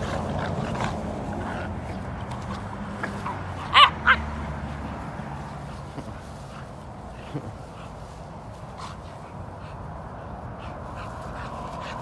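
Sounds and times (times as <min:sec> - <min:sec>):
puppies play-fighting: 0:00.0 - 0:12.0
dog barks: 0:03.0 - 0:04.5.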